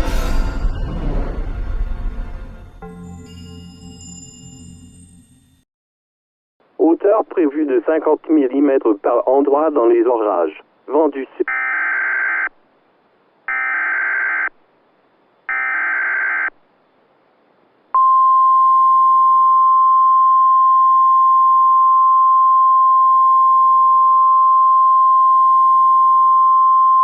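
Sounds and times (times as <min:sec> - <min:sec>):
steady warning alarm tone: 0:11.5 - 0:12.5, 0:13.5 - 0:14.5, 0:15.5 - 0:16.5.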